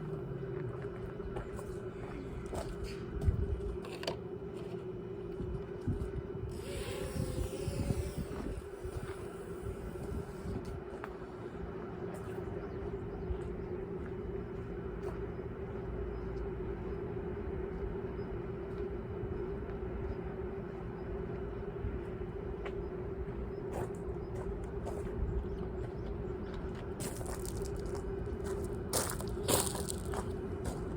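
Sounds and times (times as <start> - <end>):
wind rumbling on microphone: 2.5 - 3.8, 5.3 - 11.0, 23.2 - 30.9
drone propellers buzzing: 5.8 - 11.0.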